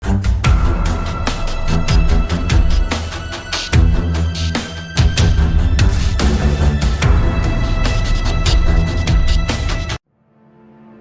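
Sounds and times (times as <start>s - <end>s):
dramatic music with heavy bass: 0.0s - 10.0s.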